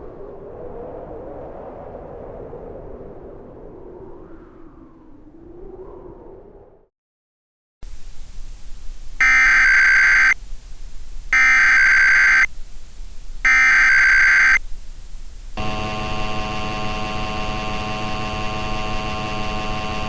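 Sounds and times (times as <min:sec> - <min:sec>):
data tone bursts: 0:09.2 - 0:10.4, 0:11.3 - 0:12.5, 0:13.4 - 0:14.6, 0:15.5 - 0:20.0
steady alert tone: 0:09.2 - 0:10.4, 0:11.4 - 0:12.5, 0:13.5 - 0:14.6.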